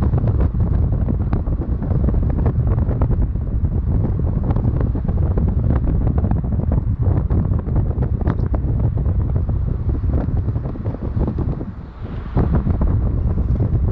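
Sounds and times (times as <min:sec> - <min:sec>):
wind buffeting microphone: 0:00.0 - 0:13.9.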